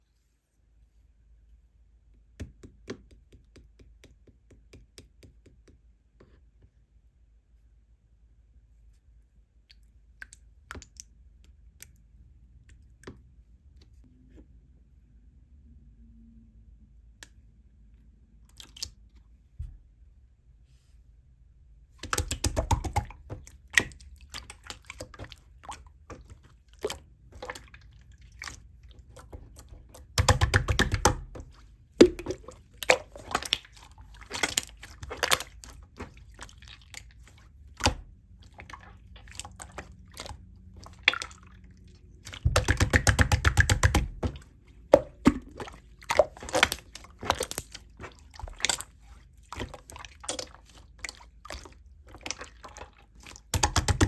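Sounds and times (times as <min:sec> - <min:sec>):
slime squelching by hand: 0:18.4 - 0:19.2, 0:22.0 - 0:54.0.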